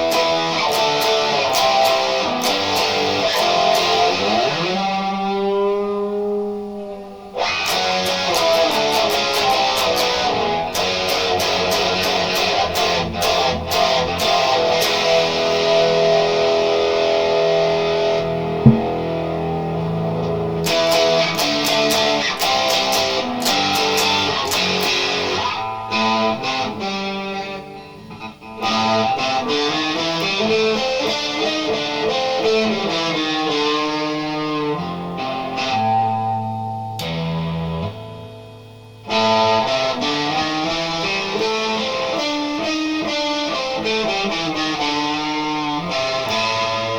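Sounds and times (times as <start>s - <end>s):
electric guitar through amplifier: 0.0s - 46.9s
sharp click: 18.7s - 19.1s.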